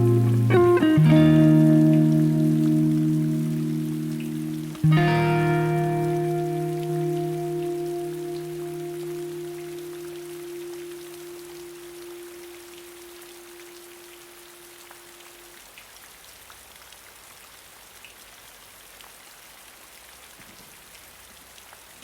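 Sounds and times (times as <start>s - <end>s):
held musical note: 0.0s - 14.2s
raindrops ticking: 0.0s - 17.0s
steady rain falling: 0.0s - 22.0s.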